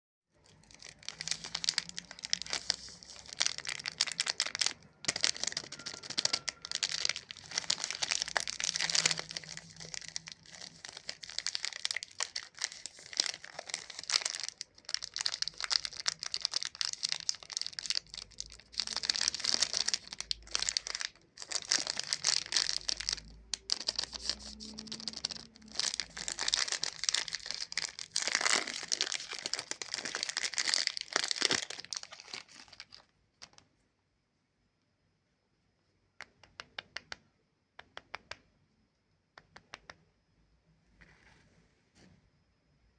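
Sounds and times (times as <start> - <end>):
plastic wrapper crinkling: 0.4 - 33.7.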